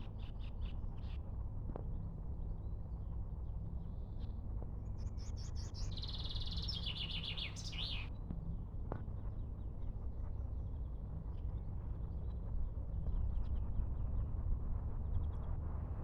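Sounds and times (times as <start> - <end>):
songbird singing: 6.0 - 8.1.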